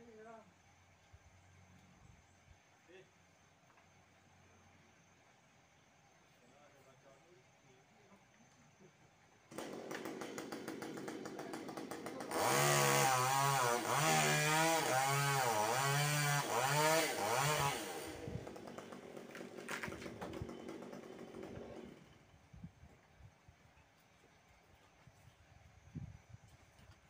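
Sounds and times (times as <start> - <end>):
chainsaw idling and revving: 9.5 - 22.2.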